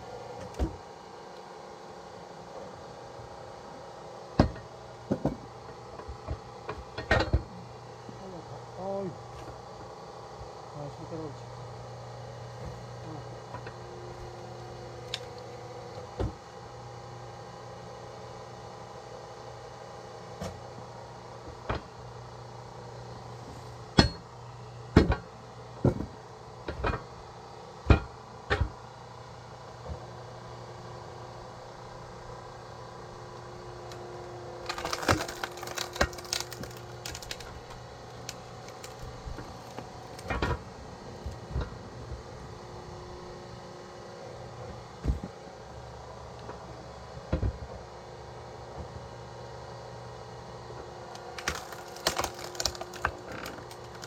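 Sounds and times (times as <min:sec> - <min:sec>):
log splitter humming: 0:31.7 - 0:41.8, 0:51.1 - 0:54.0
wood fibres crackling: 0:34.6 - 0:40.3, 0:51.1 - 0:54.0
wood knocking and cracking: 0:34.6 - 0:40.6, 0:51.2 - 0:54.0.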